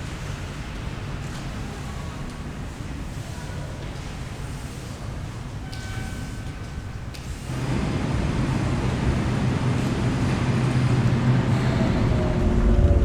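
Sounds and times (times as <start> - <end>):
vehicle engine rumbling: 7.5 - 13.0.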